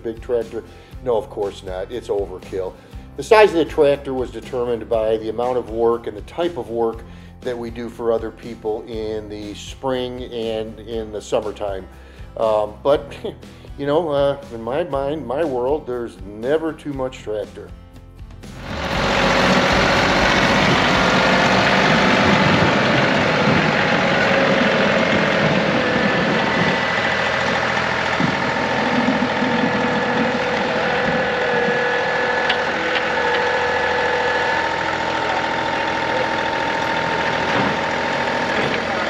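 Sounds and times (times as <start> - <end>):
tractor diesel engine running: 18.5 - 39.0.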